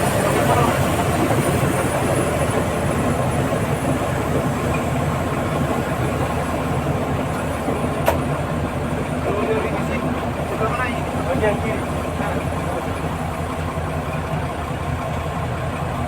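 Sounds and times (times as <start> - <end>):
bulldozer diesel engine running: 0.0 - 16.0.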